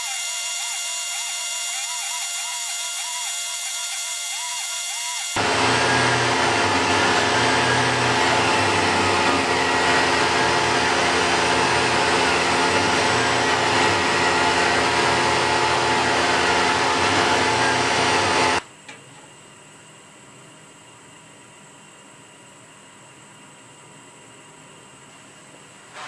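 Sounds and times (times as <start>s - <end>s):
milling machine spindle whine: 0.0s - 18.6s.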